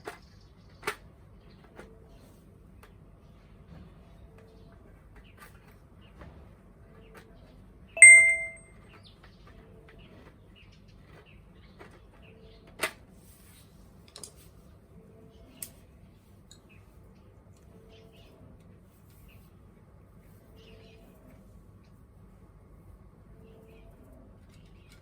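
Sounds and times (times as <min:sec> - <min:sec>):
metal object struck ringing: 0:08.0 - 0:08.6.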